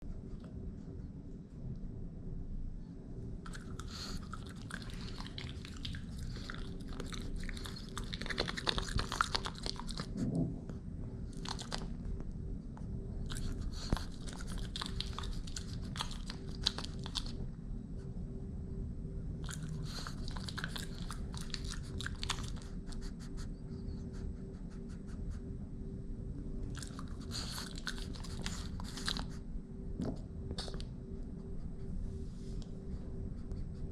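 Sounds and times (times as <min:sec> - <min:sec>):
low hum: 0:00.0 - 0:33.9
puppy chewing a treat: 0:03.4 - 0:10.2, 0:11.3 - 0:12.0, 0:13.3 - 0:17.4, 0:19.4 - 0:23.1, 0:26.7 - 0:29.4.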